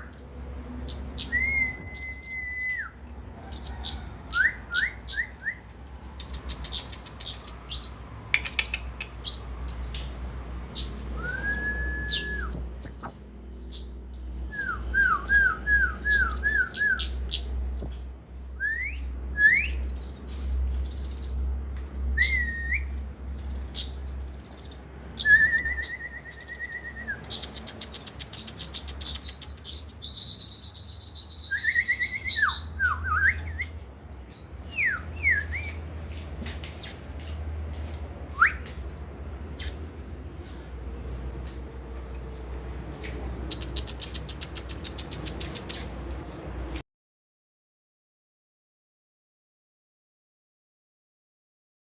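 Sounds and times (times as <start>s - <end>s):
songbird singing: 0.0s - 46.8s
buzzy bird trill: 10.7s - 18.2s, 41.2s - 45.9s.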